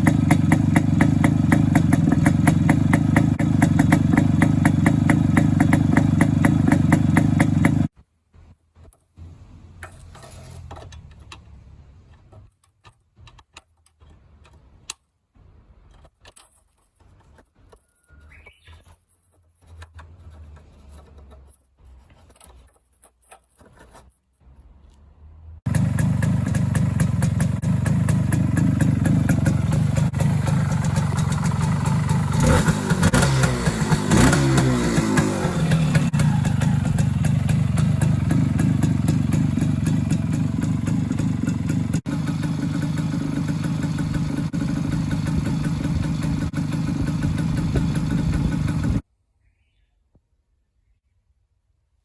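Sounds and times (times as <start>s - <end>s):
two-stroke motorcycle engine: 0.0s - 7.9s, 25.6s - 49.0s.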